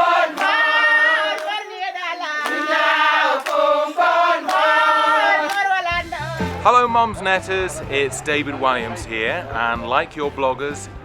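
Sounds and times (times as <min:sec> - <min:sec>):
women singing together: 0:00.0 - 0:06.6
hand clap on the beat: 0:00.0 - 0:06.7.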